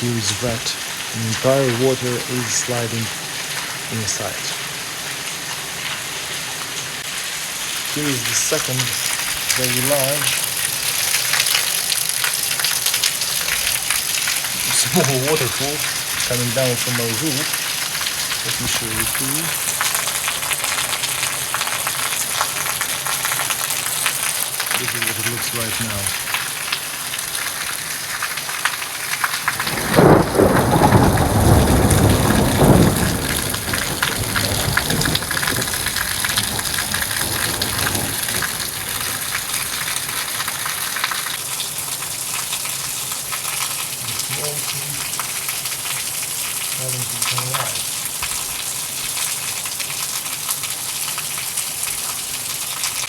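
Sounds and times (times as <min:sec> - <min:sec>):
heavy rain: 0:00.0 - 0:53.0
water running off roof: 0:00.0 - 0:53.0
thunder rumble: 0:14.4 - 0:20.9, 0:29.4 - 0:40.6.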